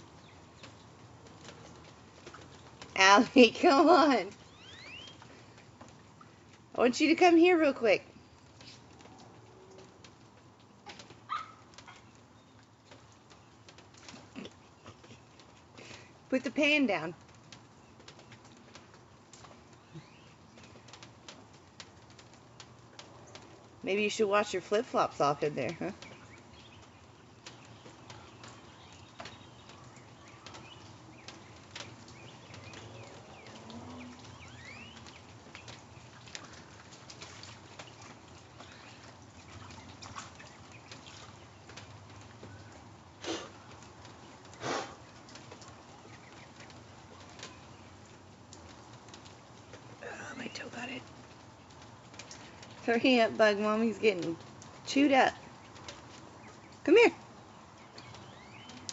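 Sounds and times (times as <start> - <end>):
rain drips and taps: 0.0 - 58.9
bird call: 4.5 - 5.3, 32.2 - 35.1.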